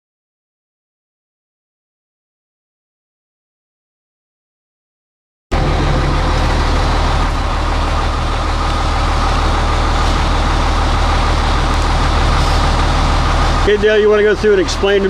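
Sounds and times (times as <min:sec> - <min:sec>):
truck engine idling: 0:05.5 - 0:15.0.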